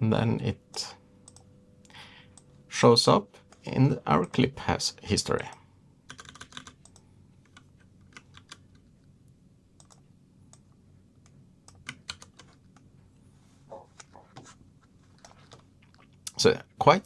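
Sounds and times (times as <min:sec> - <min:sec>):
keyboard and mouse clicks: 0:09.8 - 0:10.6, 0:11.2 - 0:12.9.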